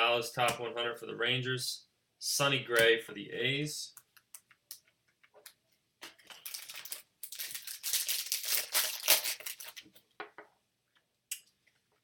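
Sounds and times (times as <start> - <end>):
foil wrapper crinkling: 6.1 - 10.0.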